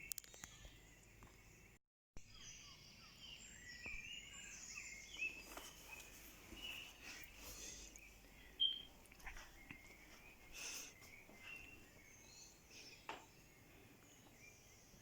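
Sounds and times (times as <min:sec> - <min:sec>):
songbirds chirping and warbling: 0:00.0 - 0:15.0
short clear bird whistle: 0:08.6 - 0:08.9.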